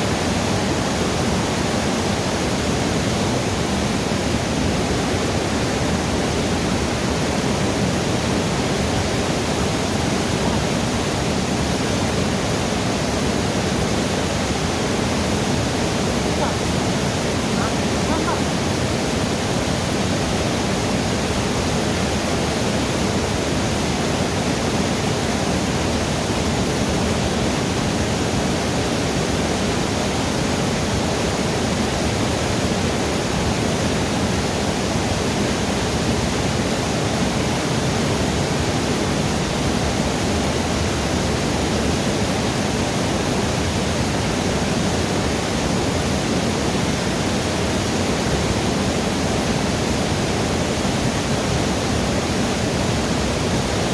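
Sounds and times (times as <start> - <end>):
river water rushing over rocks: 0.0 - 53.9.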